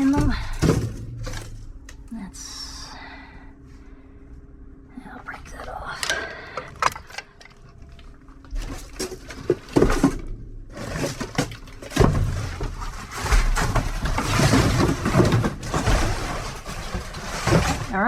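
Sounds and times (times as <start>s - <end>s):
scrap knocking and clattering: 8.6s - 18.0s.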